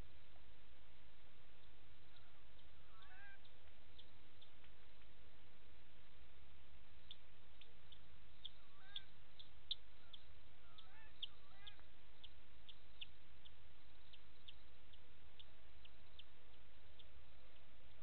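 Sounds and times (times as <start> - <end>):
animal call with high-pitched pips: 2.1 - 3.5, 8.4 - 11.9.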